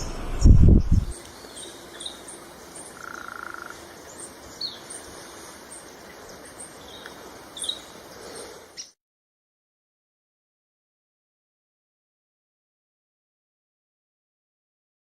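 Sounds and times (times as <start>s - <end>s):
faint steady hiss: 0.0s - 9.0s.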